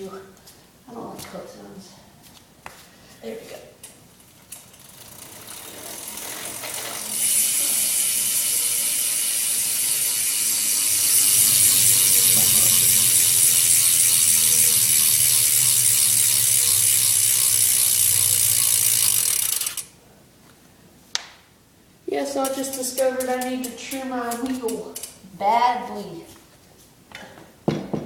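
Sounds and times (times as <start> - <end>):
bicycle freewheel ratchet clicking: 3.8 - 20.0, 22.3 - 25.2.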